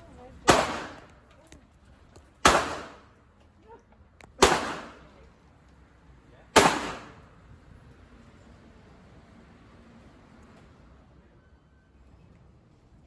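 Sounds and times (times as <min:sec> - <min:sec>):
gunshots with echo: 0:00.4 - 0:01.1, 0:02.4 - 0:03.1, 0:04.4 - 0:05.1, 0:06.6 - 0:07.3.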